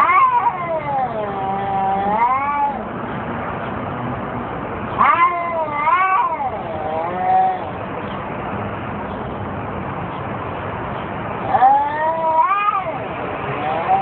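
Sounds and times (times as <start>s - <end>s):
cats yowling in a fight: 0.0s - 2.9s, 5.0s - 7.7s, 11.4s - 14.0s.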